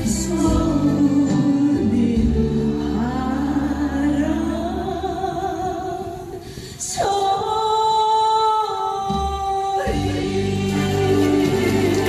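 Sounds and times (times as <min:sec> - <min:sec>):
musical backing with bass: 0:00.0 - 0:06.1, 0:09.0 - 0:12.0
woman singing: 0:00.0 - 0:12.0.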